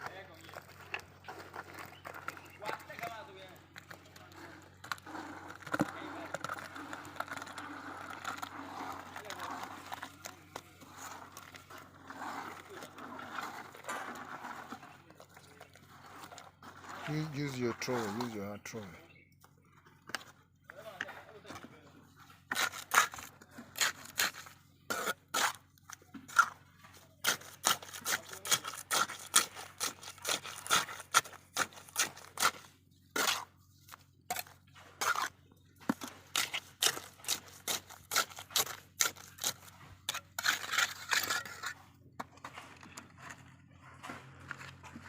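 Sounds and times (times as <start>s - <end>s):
trowel scraping and tapping: 27.2s - 45.0s.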